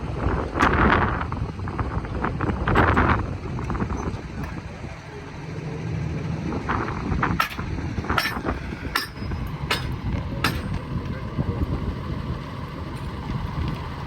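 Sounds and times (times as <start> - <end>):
low engine rumble: 0.0 - 14.0
hammer striking steel: 7.3 - 10.8.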